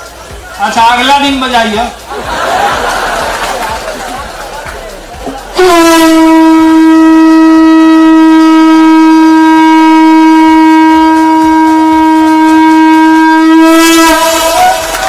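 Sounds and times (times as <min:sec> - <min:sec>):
conch shell blown: 0:05.6 - 0:15.0.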